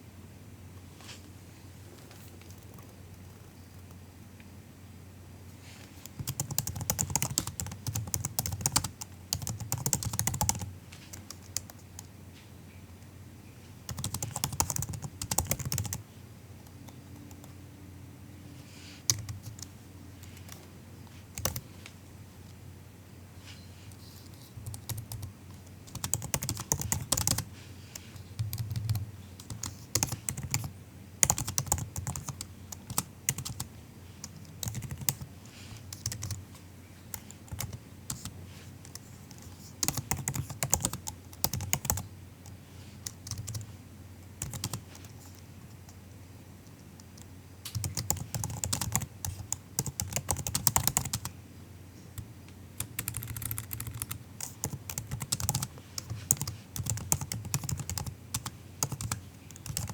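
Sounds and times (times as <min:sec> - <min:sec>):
laptop keyboard typing: 0:06.0 - 0:12.1, 0:13.9 - 0:16.0, 0:16.6 - 0:17.6, 0:19.1 - 0:20.6, 0:21.4 - 0:21.6, 0:24.3 - 0:36.4, 0:37.1 - 0:43.7, 0:44.4 - 0:46.0, 0:47.0 - 0:51.3, 0:52.2 - 0:59.9.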